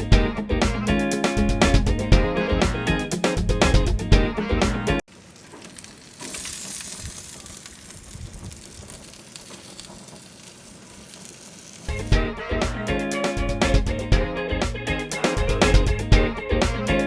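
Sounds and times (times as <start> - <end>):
chicken wings sizzling on a grill: 5.1 - 12.2, 15.0 - 16.0
guitar music: 11.9 - 17.0.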